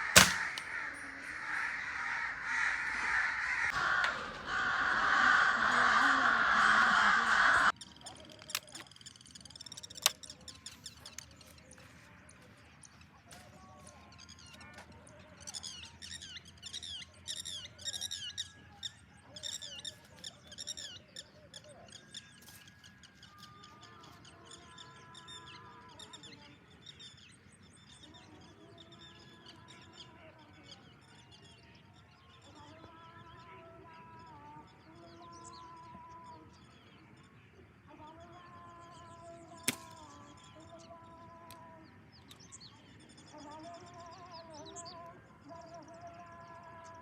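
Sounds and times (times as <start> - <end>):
sharp crack: 0.0 - 0.8, 39.7 - 40.1
small birds chirping: 0.0 - 47.0.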